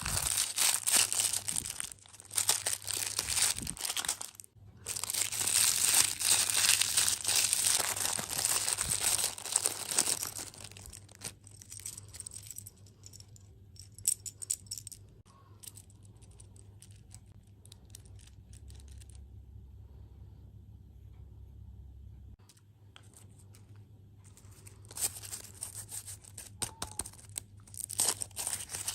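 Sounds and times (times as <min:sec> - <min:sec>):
plastic packaging crinkling: 0:00.0 - 0:12.1, 0:24.3 - 0:28.9
faint low hum: 0:00.0 - 0:28.9.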